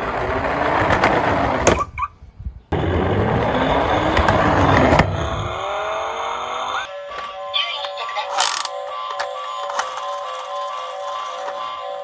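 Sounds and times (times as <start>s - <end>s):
toy car wheels rattling: 8.3s - 11.8s.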